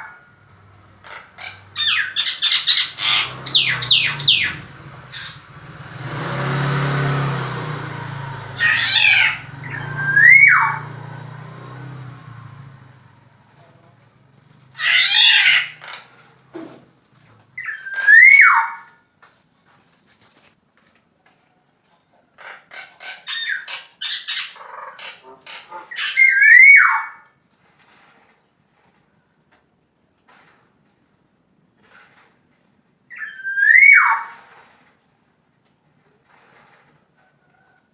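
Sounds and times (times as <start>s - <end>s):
harsh rasping bird note: 0.0s - 11.5s
bird chattering notes: 1.1s - 5.5s
bird fluty whistle: 1.8s - 5.4s, 8.6s - 10.8s, 17.6s - 18.9s, 33.1s - 34.4s.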